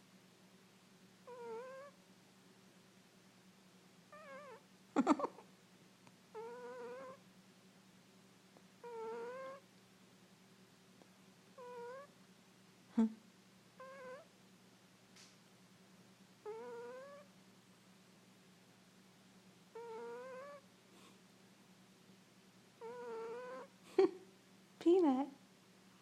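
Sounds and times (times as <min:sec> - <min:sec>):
kitten snoring: 0:01.2 - 0:02.0, 0:04.1 - 0:04.6, 0:06.3 - 0:07.2, 0:08.8 - 0:09.6, 0:11.6 - 0:12.1, 0:13.8 - 0:14.3, 0:16.4 - 0:17.3, 0:19.7 - 0:21.1, 0:22.8 - 0:23.7.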